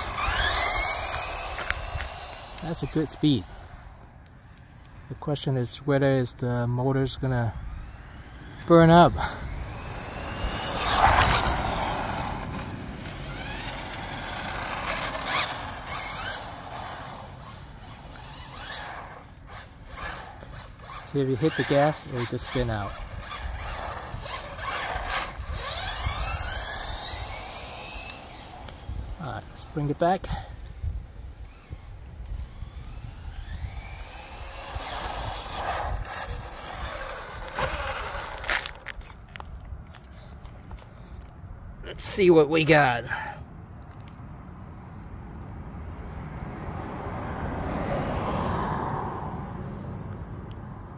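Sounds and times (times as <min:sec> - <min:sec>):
rc car electric motor whine: 0:00.0 - 0:05.1, 0:07.2 - 0:39.2
tyre and drivetrain noise: 0:00.0 - 0:50.9
wind rumble on microphone: 0:07.0 - 0:19.6, 0:22.5 - 0:41.9.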